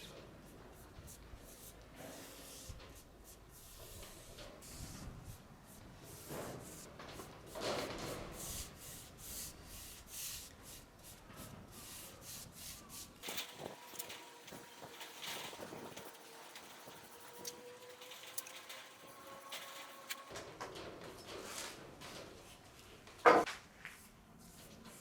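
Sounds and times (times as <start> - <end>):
rubbing strokes: 0.4 - 20.3.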